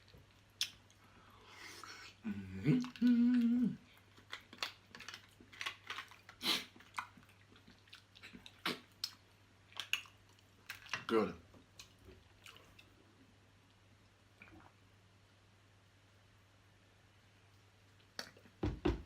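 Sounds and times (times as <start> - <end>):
chewing and mouth smacks: 0.0 - 1.0, 2.7 - 13.0, 18.0 - 18.5
person humming mmm: 2.0 - 3.9.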